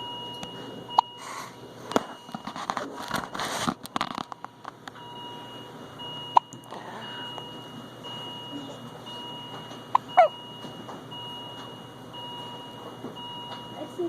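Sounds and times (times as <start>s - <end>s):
rustling handling noise: 1.2s - 4.9s
baby hiccuping: 9.9s - 10.4s.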